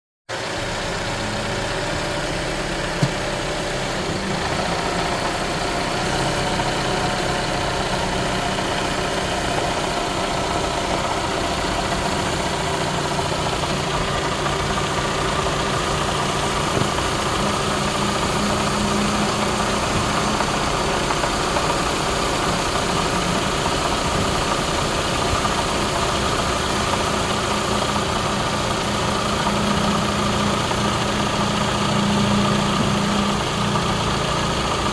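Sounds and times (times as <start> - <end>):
car engine idling with rattle: 0.3 - 34.9.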